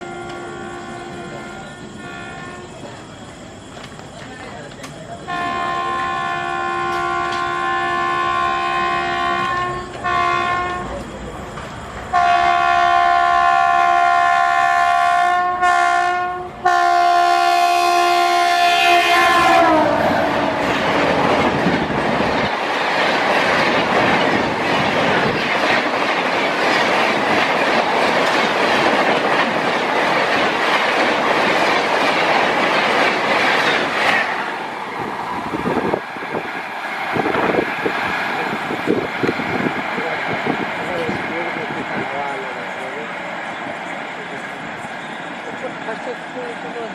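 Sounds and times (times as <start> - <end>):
locomotive horn blasts: 0.0 - 2.8, 5.3 - 11.0, 12.1 - 20.9
train wheels rolling on rails: 0.0 - 46.9.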